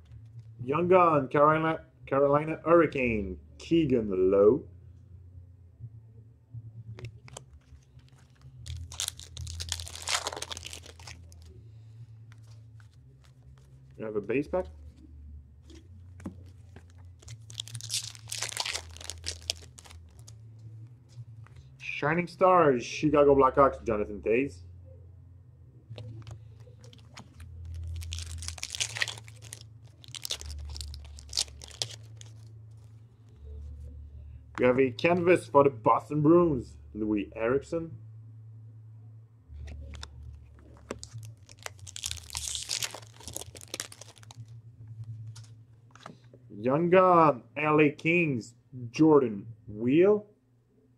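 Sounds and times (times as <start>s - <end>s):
low hum: 4.6s - 46.7s
card pack wrapper tearing and crinkling: 7.1s - 11.6s, 15.7s - 20.4s, 26.0s - 32.9s, 39.7s - 44.5s.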